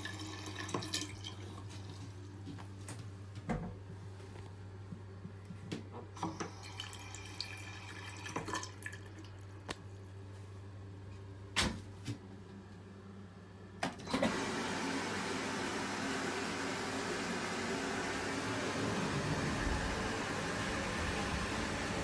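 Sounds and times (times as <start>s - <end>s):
water running from faucet: 0.0s - 2.0s, 6.3s - 9.3s, 14.9s - 22.0s.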